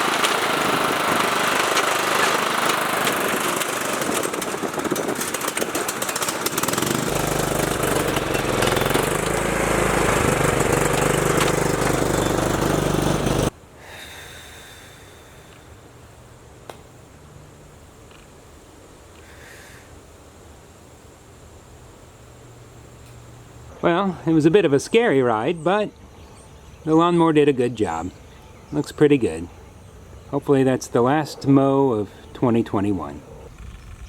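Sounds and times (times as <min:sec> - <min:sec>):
riding lawn mower engine: 0:00.0 - 0:19.6.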